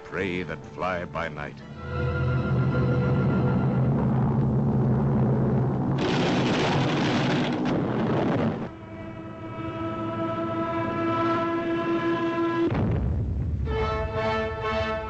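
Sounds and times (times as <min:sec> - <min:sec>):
dense roar of noise: 0:01.8 - 0:13.8
horn-like blare: 0:08.7 - 0:12.7.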